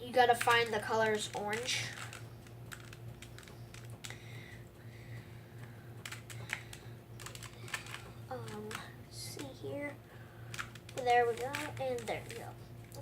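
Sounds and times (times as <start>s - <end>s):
plastic puzzle cube clicking: 0.4s - 4.2s, 6.0s - 9.6s, 10.5s - 13.0s.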